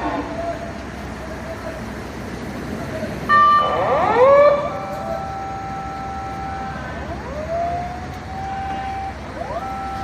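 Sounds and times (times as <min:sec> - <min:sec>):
fire engine siren wailing: 0:00.0 - 0:10.0.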